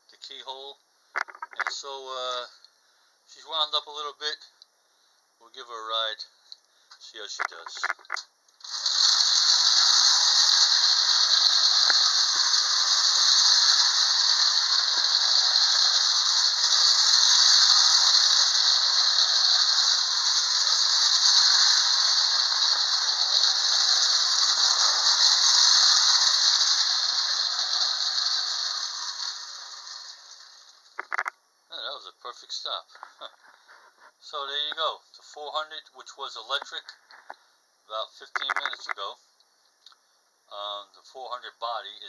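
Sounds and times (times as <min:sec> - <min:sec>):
toy wheels rolling on track: 0:01.2 - 0:01.7, 0:07.5 - 0:31.3, 0:38.4 - 0:39.0
clockwork toy train buzzing: 0:08.6 - 0:31.3.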